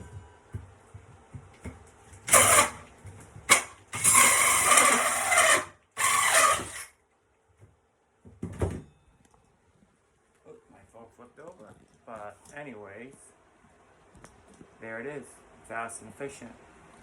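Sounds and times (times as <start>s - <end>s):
power drill cutting through wood: 2.3s - 2.9s, 3.5s - 6.9s.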